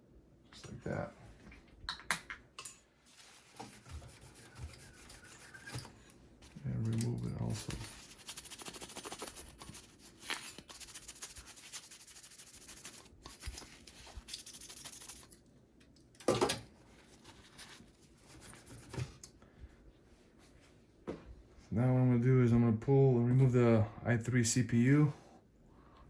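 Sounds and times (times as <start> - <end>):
paper towel rubbing: 3.1 - 5.9, 7.4 - 15.2.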